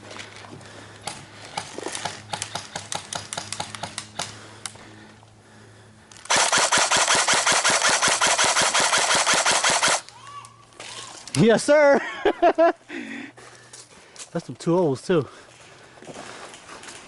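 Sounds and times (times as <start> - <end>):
airsoft gun shots: 6.3 - 10.0
full-auto airsoft burst: 6.3 - 10.0.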